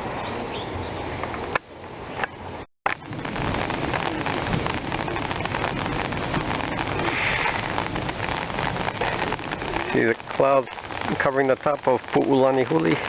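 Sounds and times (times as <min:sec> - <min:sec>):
heavy rain pouring: 0:02.9 - 0:13.0.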